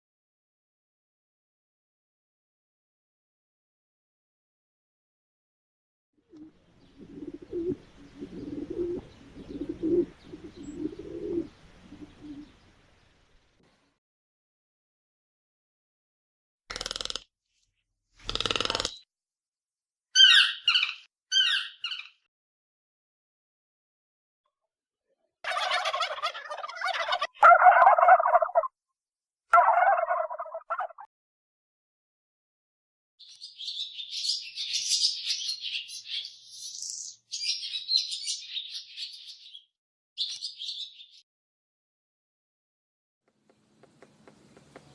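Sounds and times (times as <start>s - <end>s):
dove cooing: 6.3s - 12.6s
turkey gobbling: 25.4s - 28.7s, 29.5s - 31.1s.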